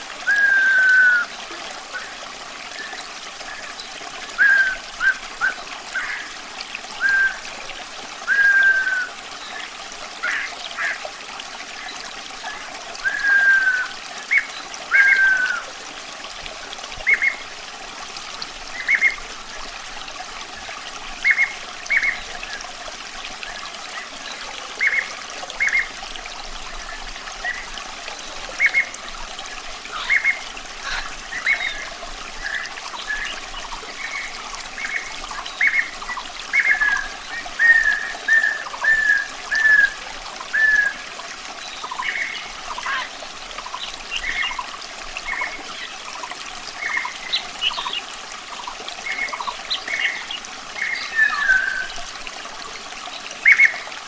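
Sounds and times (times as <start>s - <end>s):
water trickling: 0.0s - 54.0s
songbird whistling: 0.2s - 1.4s, 4.3s - 6.3s, 7.0s - 7.6s, 8.3s - 9.1s, 13.0s - 15.7s, 36.6s - 41.0s.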